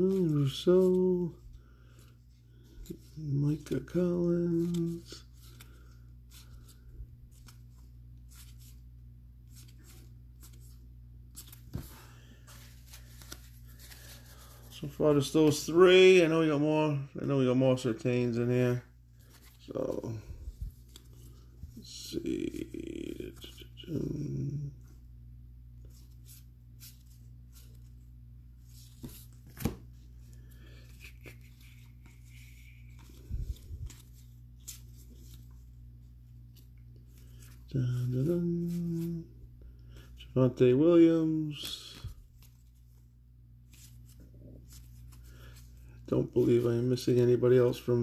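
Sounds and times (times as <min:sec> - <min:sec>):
low electrical hum: 0:00.0 - 0:48.0.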